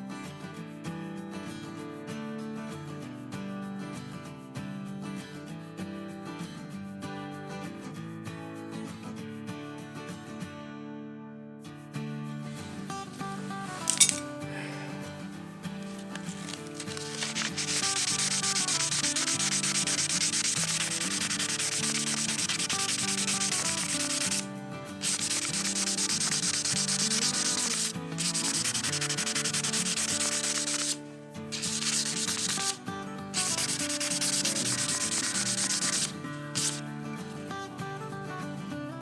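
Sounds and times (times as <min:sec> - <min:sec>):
background music: 0:12.8 - 0:37.6
dry rubbing noise: 0:12.9 - 0:24.4, 0:25.0 - 0:32.8, 0:33.4 - 0:36.8.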